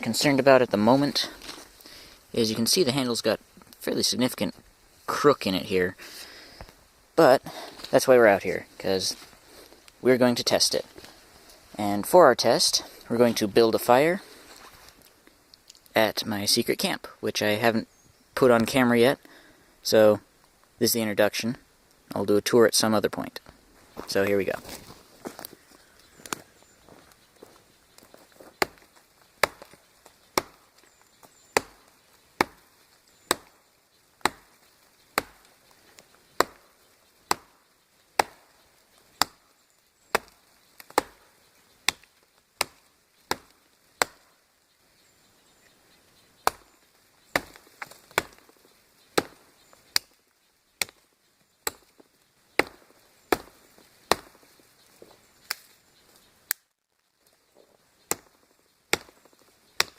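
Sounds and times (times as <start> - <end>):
tomahawk chopping wood: 28.4 - 35.7, 36.3 - 39.4, 40.1 - 44.3, 46.4 - 50.2, 50.8 - 51.0, 51.6 - 54.4, 58.0 - 59.9.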